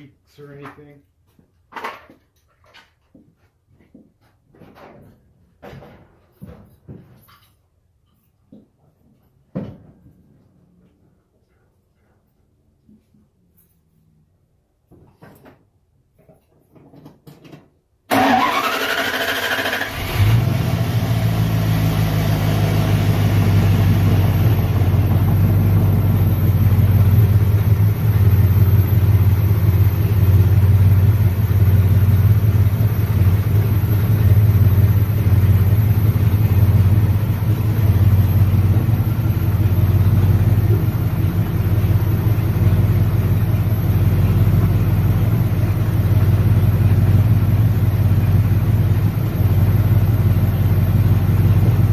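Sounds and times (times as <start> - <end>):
starter cranking engine: 18.1 - 20.5
engine idling: 18.1 - 51.9.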